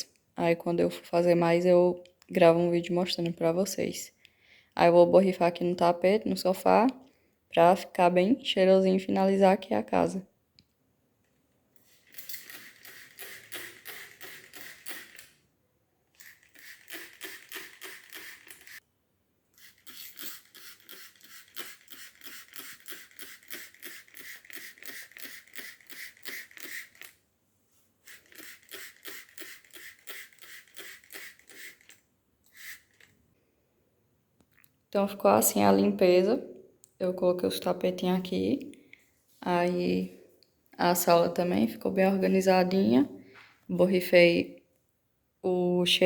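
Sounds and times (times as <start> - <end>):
spray bottle squirting: 11.8 - 15.4, 16.2 - 18.8, 19.5 - 27.2, 28.0 - 33.2.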